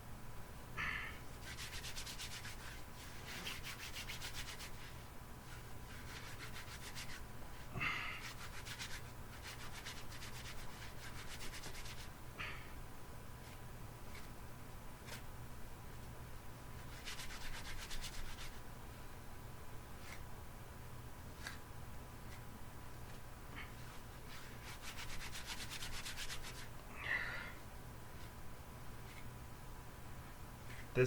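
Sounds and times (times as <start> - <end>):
twine rubbed between hands: 1.4 - 7.2, 8.2 - 12.1, 16.8 - 18.6, 23.9 - 26.7.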